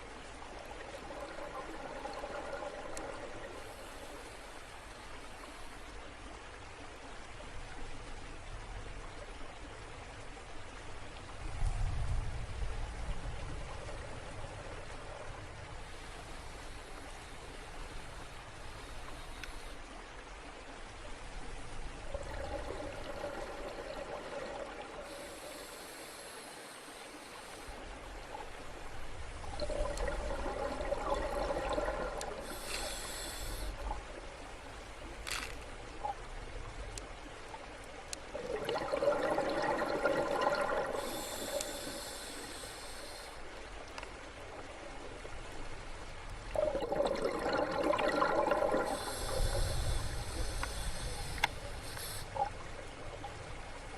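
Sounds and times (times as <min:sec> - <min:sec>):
exhaled bubbles underwater: 0:00.8 - 0:03.8, 0:21.9 - 0:25.4, 0:29.4 - 0:34.0, 0:38.3 - 0:42.6, 0:46.5 - 0:53.3
regulator hiss: 0:25.0 - 0:27.8, 0:32.2 - 0:33.9, 0:40.9 - 0:43.5, 0:48.7 - 0:52.5.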